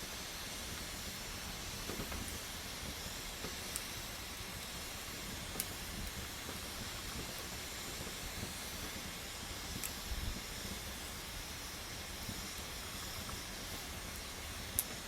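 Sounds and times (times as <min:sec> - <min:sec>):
campfire hissing and crackling: 0:00.0 - 0:15.0.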